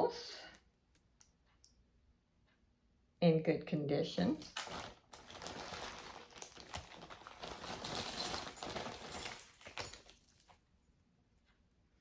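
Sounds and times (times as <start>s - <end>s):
packaging crinkling: 4.4s - 10.6s
jewelry clicking and rattling: 6.4s - 10.7s.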